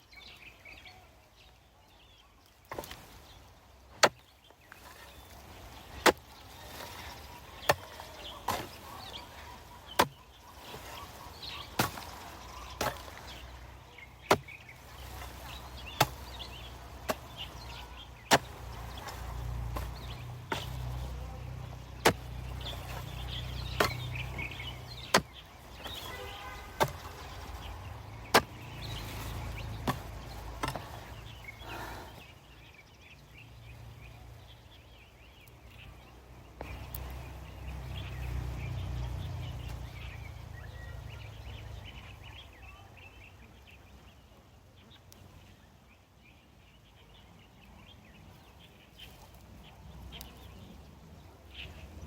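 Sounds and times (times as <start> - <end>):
hoe chopping into soil: 2.6 - 3.3, 3.9 - 32.2.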